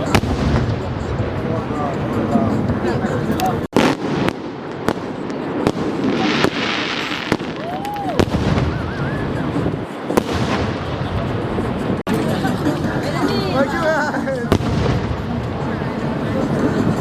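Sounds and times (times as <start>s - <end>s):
fireworks banging: 0.0s - 13.2s, 14.4s - 17.0s
fireworks crackling hiss: 3.8s - 12.0s
firework whistle rising and falling: 7.0s - 9.7s.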